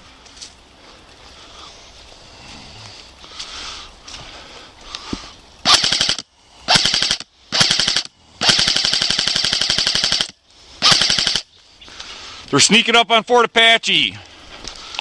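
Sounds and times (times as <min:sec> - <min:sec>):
airsoft rifle firing bursts: 0:05.6 - 0:11.5.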